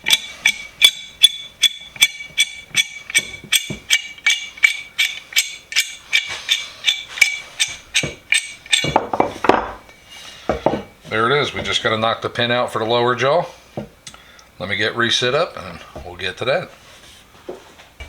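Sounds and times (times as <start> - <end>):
hammer striking metal wrench: 0.0 - 9.8.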